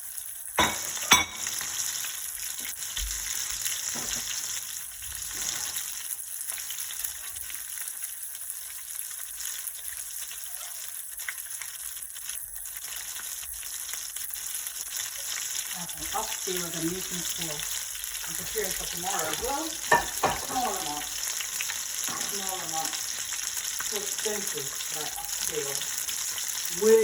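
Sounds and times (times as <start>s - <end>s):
fish sizzling in hot oil: 0.0s - 27.0s.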